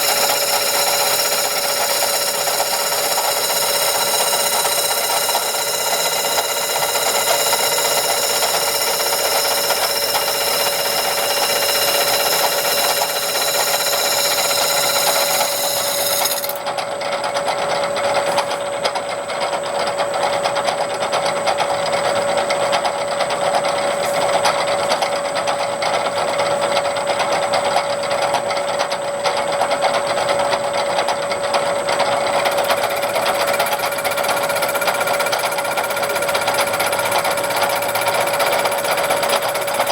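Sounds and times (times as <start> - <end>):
high machine whine: 0.0 - 16.7, 32.3 - 39.9
machine clatter and hum: 0.0 - 39.9.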